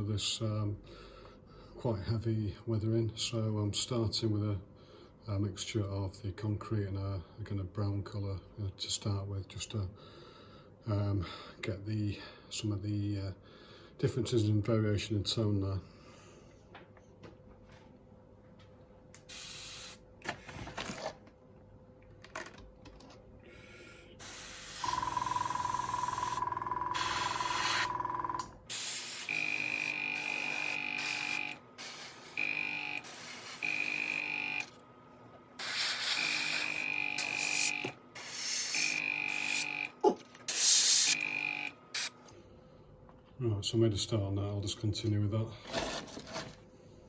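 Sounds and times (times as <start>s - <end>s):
airbrush spraying hiss: 19.3s - 20.0s, 24.2s - 25.1s, 27.0s - 27.9s, 28.7s - 29.4s, 30.2s - 32.4s, 33.0s - 33.8s, 35.6s - 39.6s, 40.5s - 41.2s.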